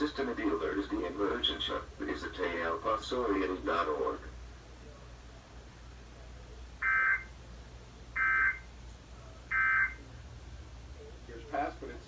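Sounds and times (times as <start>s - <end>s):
electronic data tone bursts: 6.8s - 7.3s, 8.2s - 8.7s, 9.5s - 10.0s.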